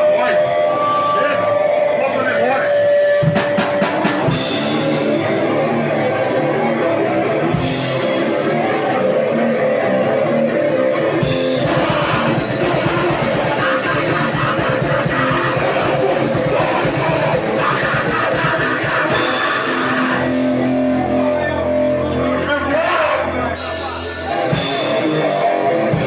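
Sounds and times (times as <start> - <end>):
distorted guitar: 0.0 - 26.0
live heavy band playing: 0.0 - 26.0
fast drumming: 11.2 - 20.2.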